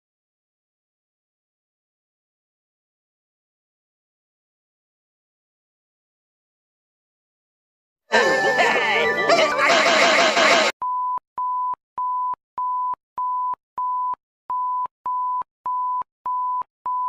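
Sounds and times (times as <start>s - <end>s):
short electronic beeps: 10.8s - 17.0s.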